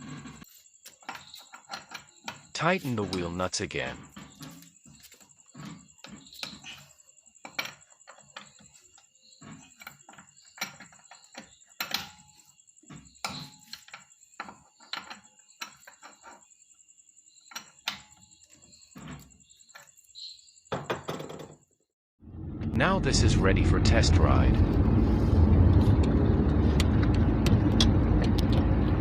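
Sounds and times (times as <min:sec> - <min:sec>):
faint high whine: 0:22.5 - 0:25.4.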